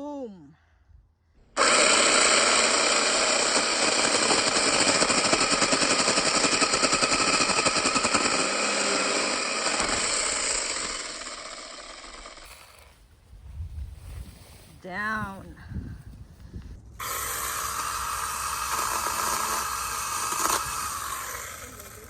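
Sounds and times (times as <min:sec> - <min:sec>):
mini chainsaw running: 0:01.6 - 0:12.9, 0:17.0 - 0:22.0
chain cutting through branch: 0:17.0 - 0:22.0.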